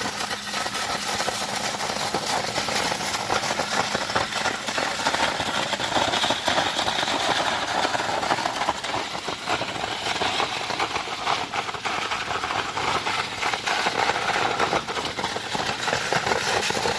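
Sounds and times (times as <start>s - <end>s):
engine running: 0.0s - 16.9s
high-pressure water jet blasting concrete: 0.0s - 16.9s.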